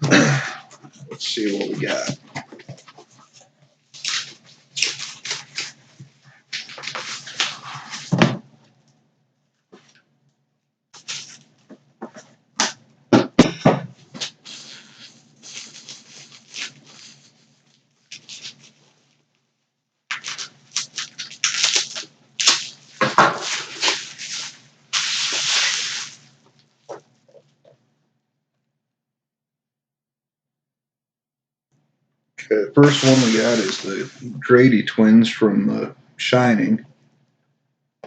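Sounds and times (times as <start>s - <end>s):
packing material rustling: 3.3s - 8.1s, 14.1s - 19.3s, 20.1s - 27.0s, 32.8s - 34.3s
cardboard box being unpacked: 32.8s - 34.2s.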